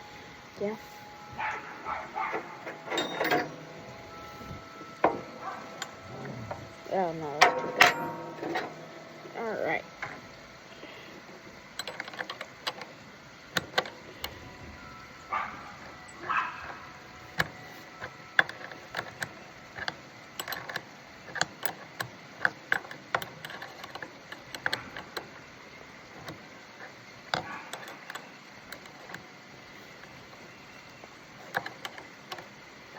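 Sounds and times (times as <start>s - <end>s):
metallic clicks of hand tools: 11.8s - 12.9s, 18.4s - 25.3s.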